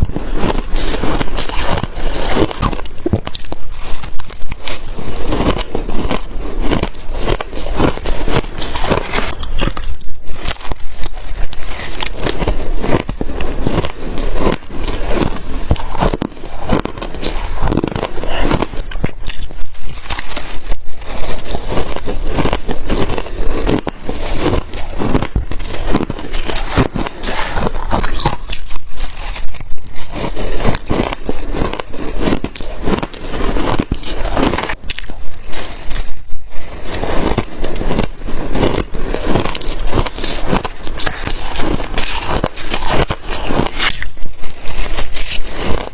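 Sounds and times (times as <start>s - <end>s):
crunching shaved ice: 0.0s - 45.9s.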